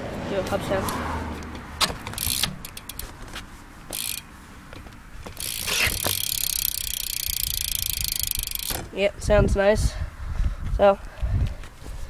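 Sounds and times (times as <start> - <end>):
freewheel ratchet clicking: 1.9 - 4.3, 5.3 - 8.8.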